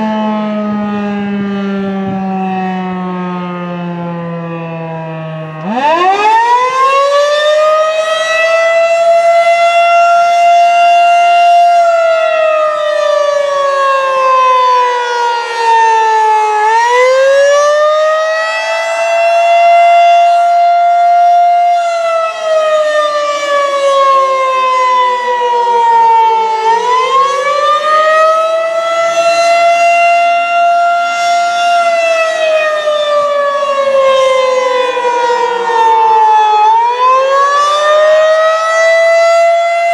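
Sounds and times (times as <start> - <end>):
warning siren wailing: 0.0 - 39.9.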